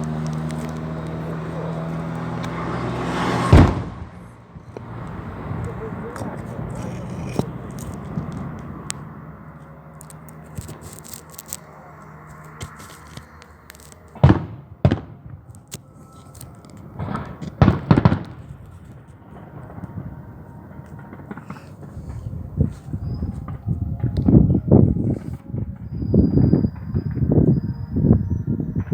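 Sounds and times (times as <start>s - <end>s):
loud firework bangs: 0.0s - 6.8s, 14.1s - 15.5s, 16.8s - 24.6s
fireworks crackling: 0.0s - 28.0s.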